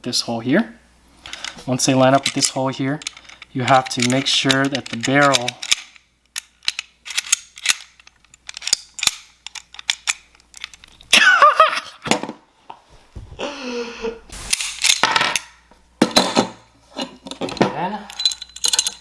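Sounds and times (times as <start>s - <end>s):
metallic clicks of gun parts: 1.2s - 11.1s, 17.3s - 19.0s.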